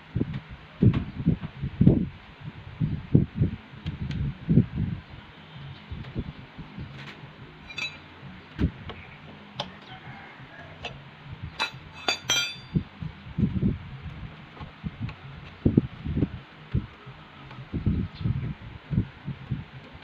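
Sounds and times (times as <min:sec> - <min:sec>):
metal tools clinking: 0:07.7 - 0:08.1, 0:11.6 - 0:12.8.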